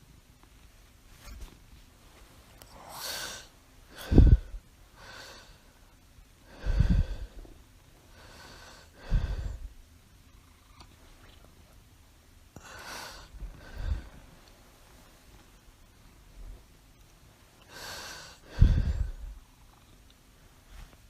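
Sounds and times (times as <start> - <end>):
woman breathing heavily: 2.9 - 5.9, 6.5 - 9.8, 12.6 - 14.4, 17.6 - 19.4.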